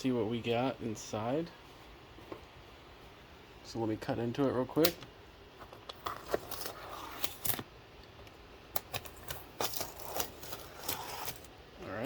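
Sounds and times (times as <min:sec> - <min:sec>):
box being cut open: 0:09.2 - 0:11.5.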